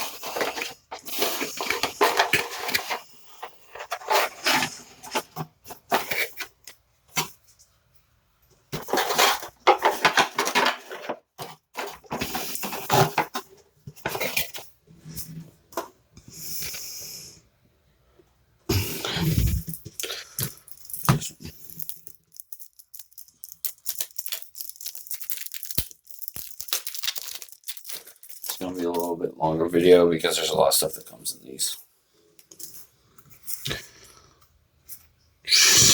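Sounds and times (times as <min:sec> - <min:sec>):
trading cards and packaging rustling: 0:00.0 - 0:07.6, 0:08.7 - 0:15.4, 0:18.7 - 0:31.8.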